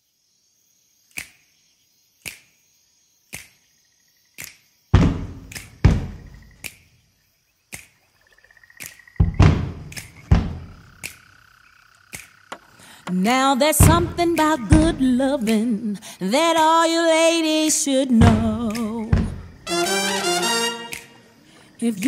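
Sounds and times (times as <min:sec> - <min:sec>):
heavy booming thuds: 0:05.0 - 0:06.5, 0:09.2 - 0:10.9, 0:13.8 - 0:15.0, 0:18.2 - 0:19.6
sharp clicks: 0:09.7 - 0:10.3.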